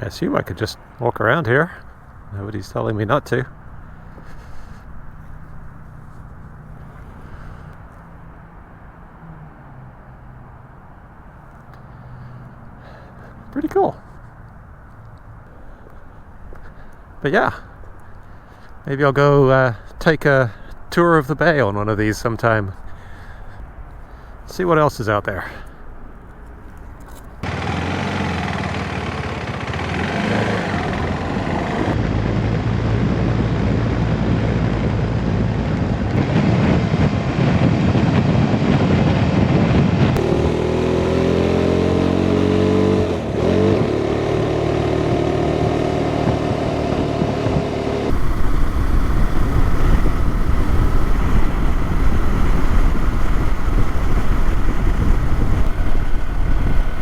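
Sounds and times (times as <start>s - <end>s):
motorcycle engine accelerating: 27.4s - 57.0s
wind noise: 30.6s - 40.4s, 46.2s - 57.0s.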